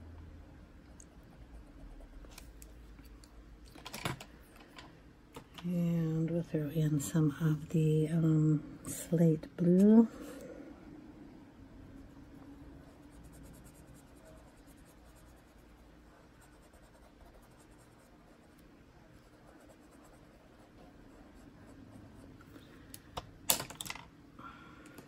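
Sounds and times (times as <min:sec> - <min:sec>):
faint steady hum: 0:00.0 - 0:25.0
pencil on paper: 0:12.8 - 0:22.3.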